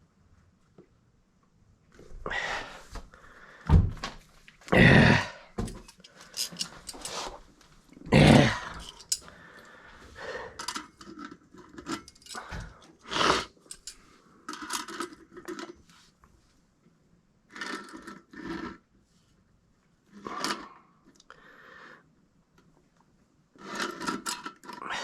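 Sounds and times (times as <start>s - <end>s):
tools clattering and knocking: 5.6s - 7.4s, 8.2s - 9.3s, 10.6s - 12.9s, 13.6s - 15.8s.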